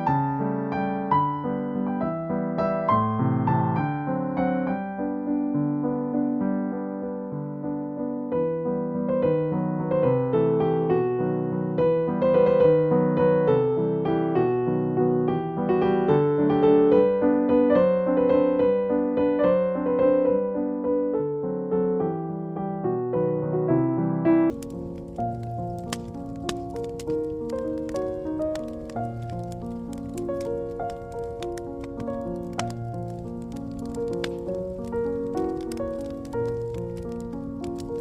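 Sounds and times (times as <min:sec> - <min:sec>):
soft electric piano music: 0:00.0 - 0:38.0.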